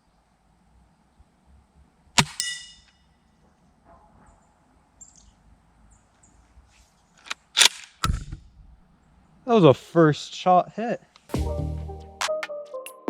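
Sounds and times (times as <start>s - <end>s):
airsoft rifle shot: 2.2s - 2.7s.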